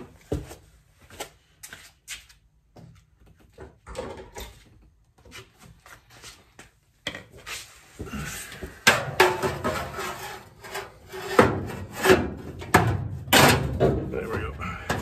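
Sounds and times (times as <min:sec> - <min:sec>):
metal scraping and rubbing: 0:09.2 - 0:12.6.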